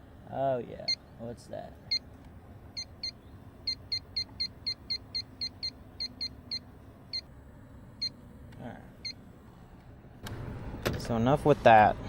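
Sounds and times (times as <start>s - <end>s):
leak detector beeping: 2.8s - 7.3s.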